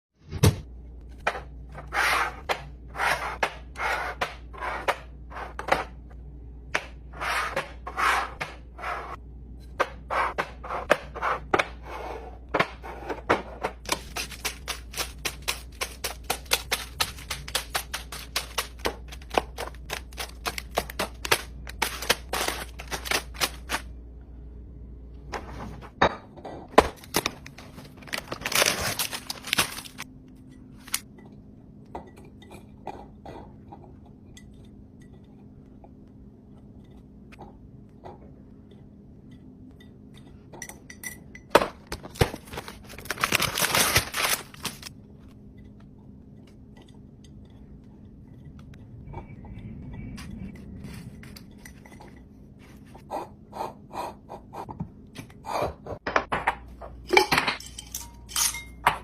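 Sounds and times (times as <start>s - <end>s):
low steady hum: 0.3s - 59.0s
packaging crinkling and rustling: 19.9s - 23.8s, 27.0s - 30.0s, 42.0s - 44.9s.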